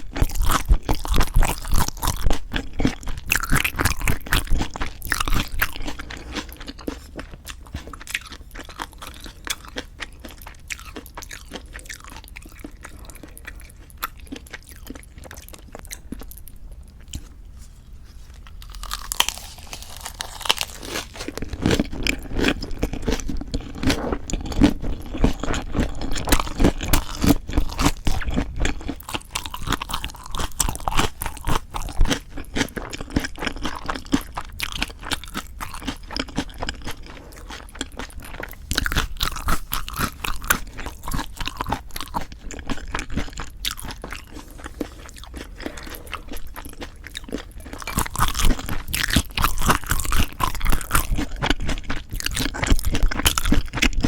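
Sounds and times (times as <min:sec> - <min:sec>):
crunchy chewing: 0:00.0 - 0:54.0.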